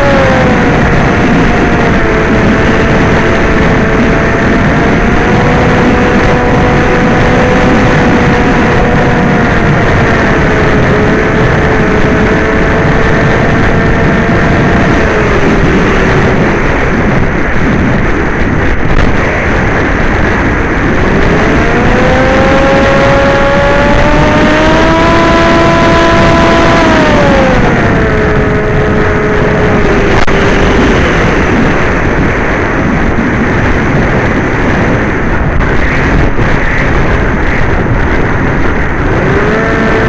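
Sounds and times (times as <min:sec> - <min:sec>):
electric motor whine: 0:00.0 - 0:17.7, 0:20.7 - 0:32.0, 0:38.9 - 0:40.0
wind rush on microphone: 0:00.0 - 0:40.0.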